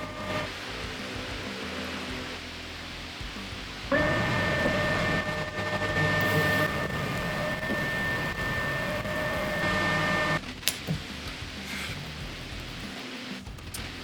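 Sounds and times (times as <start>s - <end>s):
metal lathe motor whine: 0.0s - 2.7s, 3.9s - 10.4s.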